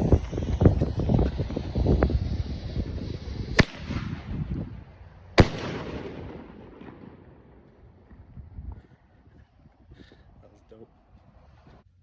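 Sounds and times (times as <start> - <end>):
firework burst bang: 0.0 - 4.4, 5.4 - 7.2
firework launch bang: 0.0 - 4.7, 5.4 - 7.7.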